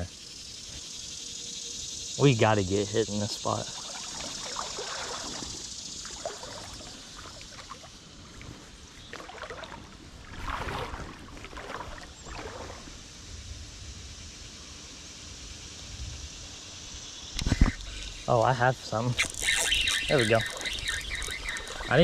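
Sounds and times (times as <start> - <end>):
creek water running: 2.1 - 13.2, 17.5 - 22.0.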